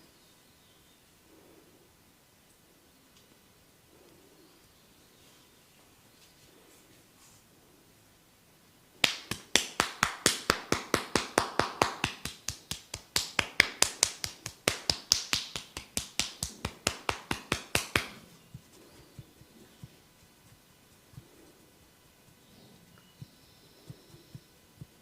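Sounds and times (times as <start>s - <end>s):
percussive hand tapping massage: 9.0s - 21.6s.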